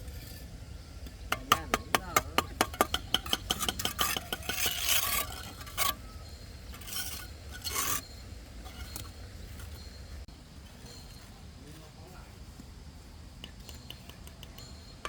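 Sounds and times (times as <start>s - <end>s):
metal tool scraping: 0.0s - 0.6s, 1.3s - 10.0s
metal tool knock: 1.3s - 4.4s
metal tool tapping: 1.3s - 4.7s.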